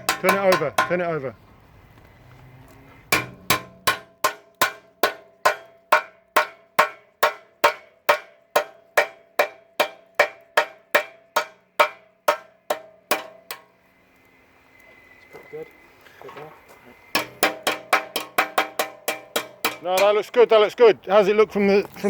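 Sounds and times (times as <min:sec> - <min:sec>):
hammer striking hot steel on anvil: 0:00.0 - 0:01.3, 0:03.1 - 0:13.7, 0:17.1 - 0:20.3.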